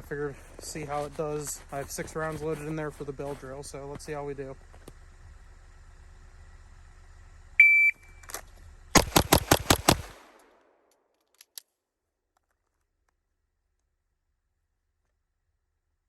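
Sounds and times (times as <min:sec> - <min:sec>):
shot timer beep: 0:07.6 - 0:08.2
rapid pistol shots: 0:09.0 - 0:10.8.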